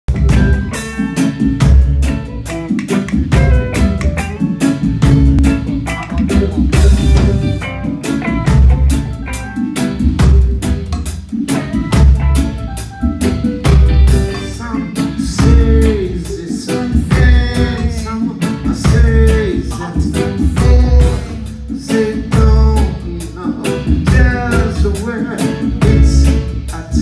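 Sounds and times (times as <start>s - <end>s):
band music with drums: 0.0s - 27.0s
person singing: 5.5s - 8.5s, 14.2s - 27.0s.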